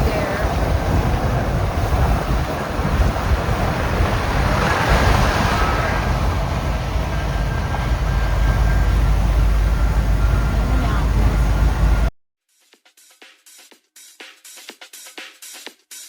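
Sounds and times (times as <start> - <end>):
road noise rushing hiss: 0.0 - 12.1
truck engine deep rumble: 0.0 - 12.1.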